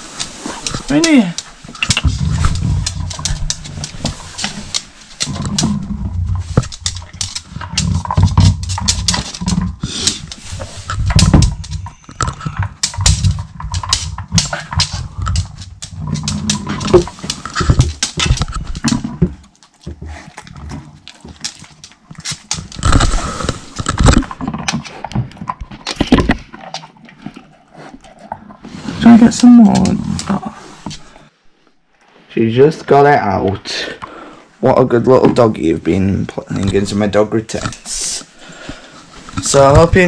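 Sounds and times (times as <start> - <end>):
dog playing with treat ball: 0.0 - 26.8
clicks and knocks: 0.6 - 19.4.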